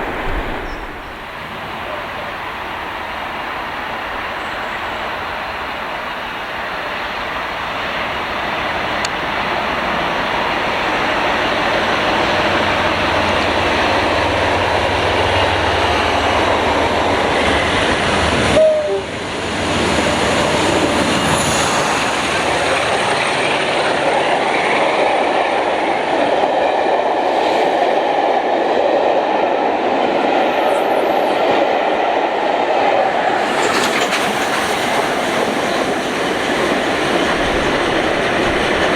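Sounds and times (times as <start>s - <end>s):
train wheels clattering on rails: 19.2s - 27.0s, 33.1s - 38.9s.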